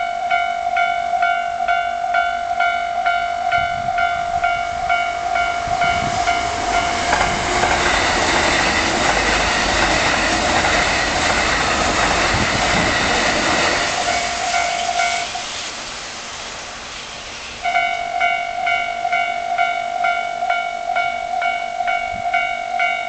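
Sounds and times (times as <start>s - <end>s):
level crossing bell ringing: 0.0s - 7.2s, 14.1s - 15.3s, 17.7s - 23.0s
train wheels rushing and clattering: 5.6s - 18.7s.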